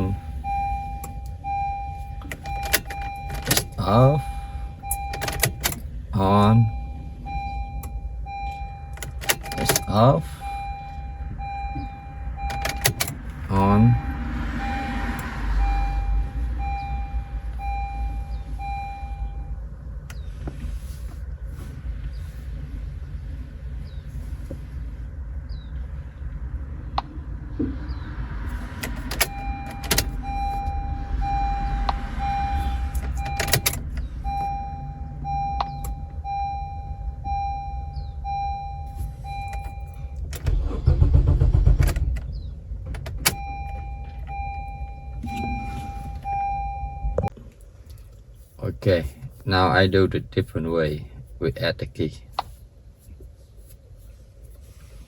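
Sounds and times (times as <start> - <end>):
car warning chime beeping: 0.0 - 20.3, 28.8 - 41.3, 43.1 - 47.5
steady low rumble: 0.0 - 55.0.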